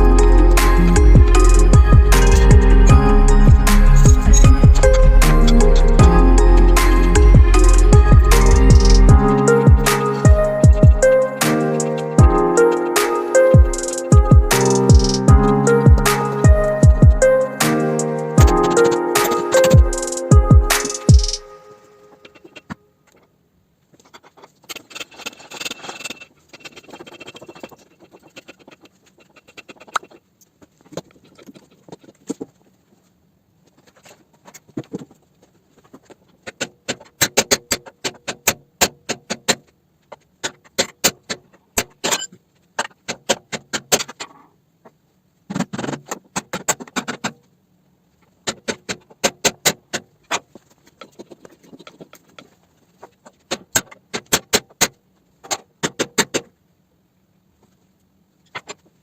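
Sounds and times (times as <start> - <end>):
metallic tapping on steel: 6.7 - 11.2, 18.4 - 21.5
tool scraping metal: 24.0 - 32.4.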